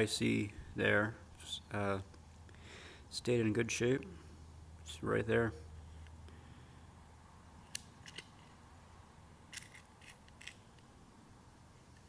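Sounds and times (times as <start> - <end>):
low steady hum: 0.0 - 12.0
small parts clicking and tapping: 7.6 - 8.3, 9.5 - 10.9.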